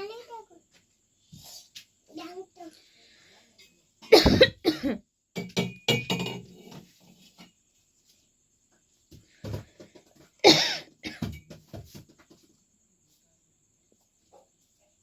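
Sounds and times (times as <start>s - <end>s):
person coughing: 4.1s - 5.0s, 10.5s - 11.3s.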